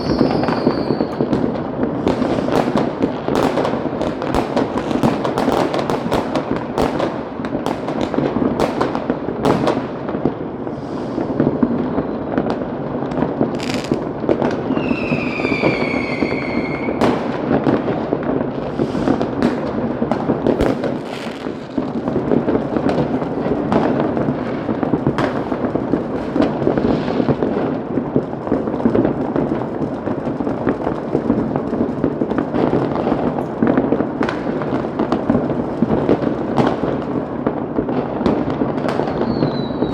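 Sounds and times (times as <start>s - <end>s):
whistling firework shriek: 0.0s - 1.3s, 14.6s - 17.1s, 39.0s - 39.9s
firecrackers banging and crackling: 0.0s - 39.9s.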